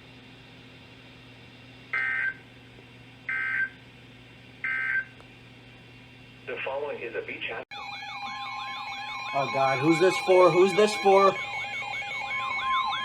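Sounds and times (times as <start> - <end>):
screeching data tones: 7.8 - 13.0.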